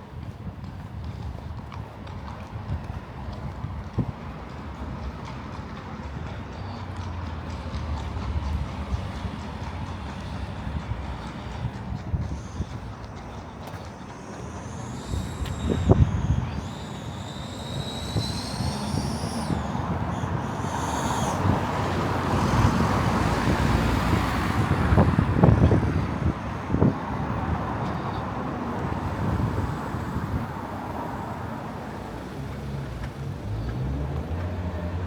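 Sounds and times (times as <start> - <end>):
steady traffic noise: 0.0 - 35.0
vehicle passing close by: 7.5 - 35.0
thin high tones: 12.2 - 21.7.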